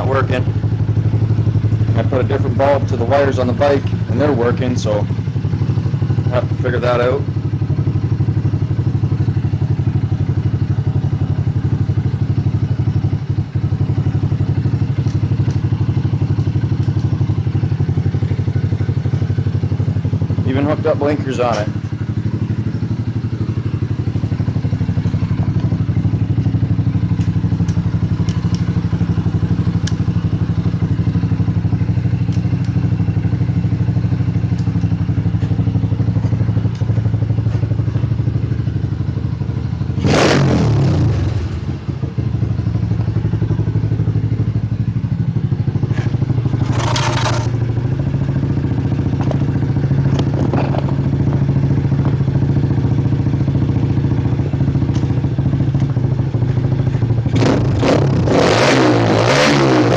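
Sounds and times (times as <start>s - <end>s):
dirt bike engine idling: 0.0s - 57.9s.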